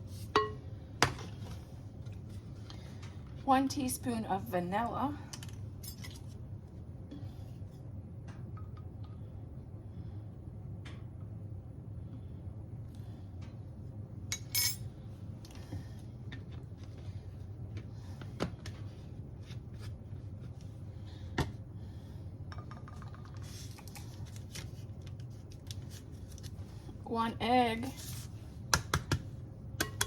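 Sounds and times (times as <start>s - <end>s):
steady low hum: 0.0s - 30.0s
utensils and dishes clinking: 14.3s - 14.9s.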